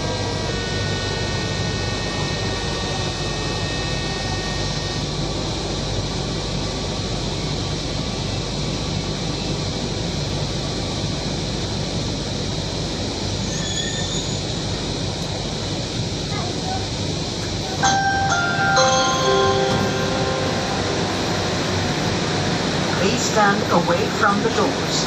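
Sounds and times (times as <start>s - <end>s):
faint high steady tones: 17.6s - 23.7s.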